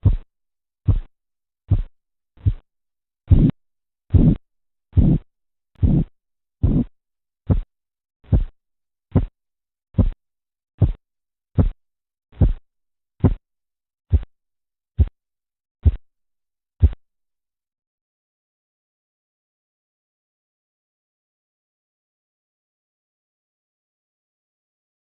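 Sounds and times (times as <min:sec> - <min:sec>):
pulse thumps through stethoscope: 0:00.0 - 0:01.1, 0:01.7 - 0:02.7, 0:03.3 - 0:04.4, 0:05.0 - 0:05.2, 0:05.8 - 0:06.9, 0:07.5 - 0:09.4, 0:10.0 - 0:10.2, 0:10.8 - 0:11.0, 0:11.6 - 0:11.8, 0:12.4 - 0:12.6, 0:13.2 - 0:13.4, 0:14.1 - 0:14.3, 0:15.0 - 0:15.2, 0:15.8 - 0:16.0, 0:16.8 - 0:17.0.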